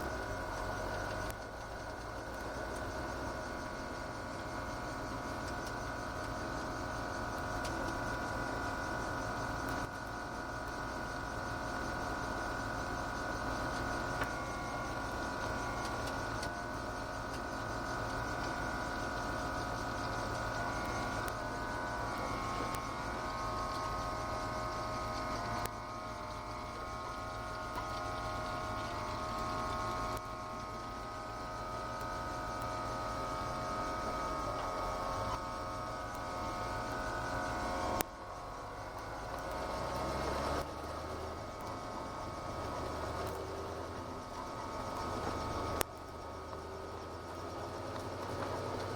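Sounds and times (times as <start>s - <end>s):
steady whine: 0.0s - 48.9s
car engine running: 38.6s - 48.9s.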